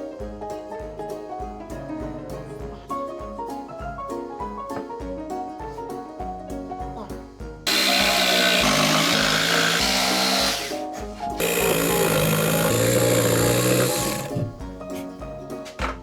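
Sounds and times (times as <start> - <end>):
piano and vibraphone music: 0.0 - 7.6
power tool running: 7.7 - 14.6.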